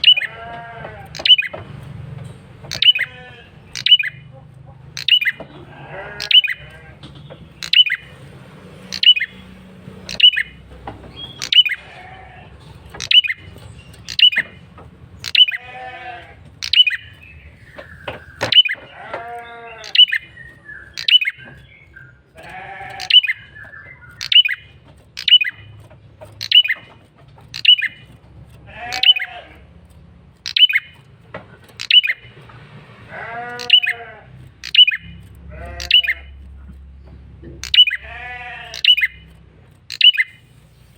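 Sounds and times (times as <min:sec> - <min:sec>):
bird calling sharp high notes: 0:00.0 - 0:00.4, 0:01.1 - 0:01.5, 0:02.7 - 0:04.2, 0:05.0 - 0:05.4, 0:06.0 - 0:06.7, 0:07.6 - 0:08.1, 0:08.8 - 0:10.6, 0:11.2 - 0:12.1, 0:13.0 - 0:13.4, 0:14.0 - 0:14.6, 0:15.2 - 0:15.9, 0:16.6 - 0:25.7, 0:27.5 - 0:28.1, 0:30.4 - 0:30.9, 0:31.8 - 0:32.3, 0:33.4 - 0:34.0, 0:34.6 - 0:36.4, 0:37.6 - 0:39.3, 0:39.9 - 0:40.5.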